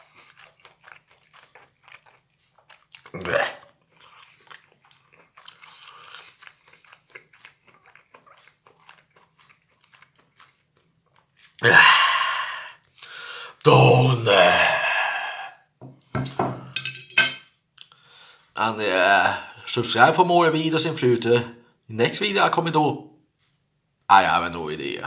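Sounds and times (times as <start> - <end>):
person chewing with wet mouth clicks: 0.0 - 11.6.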